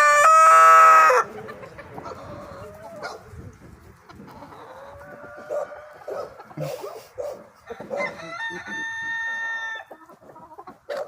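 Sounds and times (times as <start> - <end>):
rooster crowing: 0.0 - 1.3, 5.1 - 6.3, 7.7 - 9.9
chickens clucking softly: 1.2 - 11.0.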